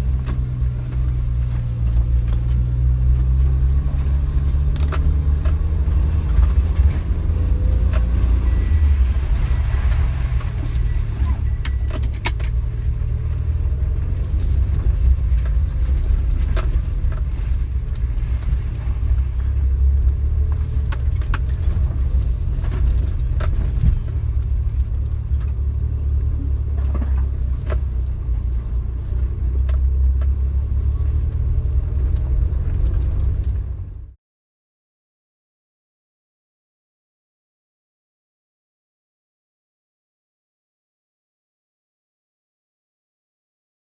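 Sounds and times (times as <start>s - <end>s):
car engine and road rumble: 0.0s - 34.2s.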